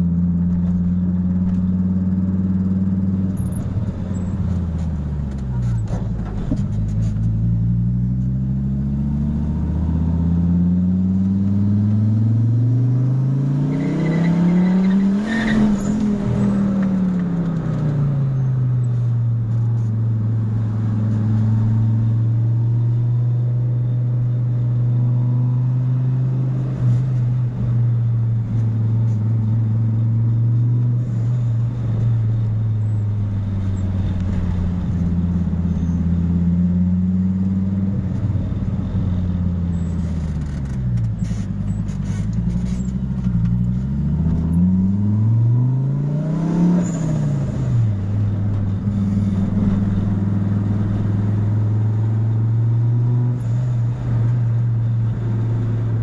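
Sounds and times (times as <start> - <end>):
car engine revving: 24.7 - 56.0.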